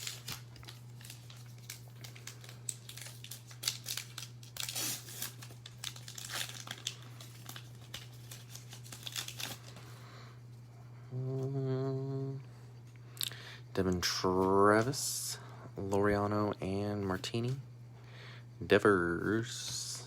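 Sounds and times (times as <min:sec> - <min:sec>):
plastic wrapper crinkling and tearing: 0:00.0 - 0:09.8
cards being handled: 0:00.0 - 0:09.9
low hum: 0:00.0 - 0:20.0.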